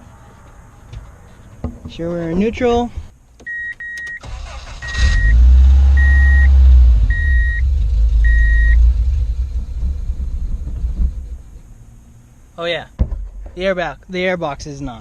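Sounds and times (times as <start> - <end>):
dashboard warning chime beeping: 3.4 - 7.6, 8.2 - 8.8
car engine cranking and running: 4.2 - 11.8.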